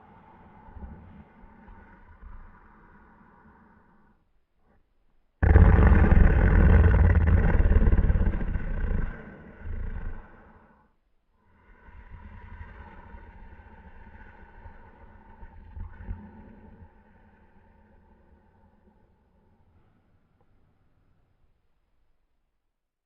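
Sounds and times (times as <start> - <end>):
toy buzzy snore: 5.4 - 10.8.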